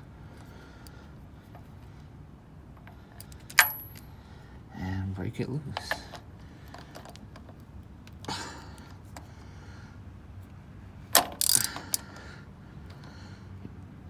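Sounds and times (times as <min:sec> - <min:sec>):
ratchet wrench clicking: 0:03.2 - 0:04.1, 0:11.2 - 0:12.2
metal tool handling: 0:03.5 - 0:04.0.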